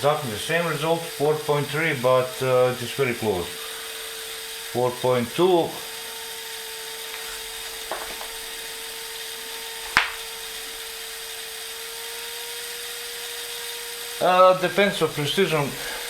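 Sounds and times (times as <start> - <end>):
air compressor humming: 0.0 - 16.0
sharp click: 9.9 - 10.2.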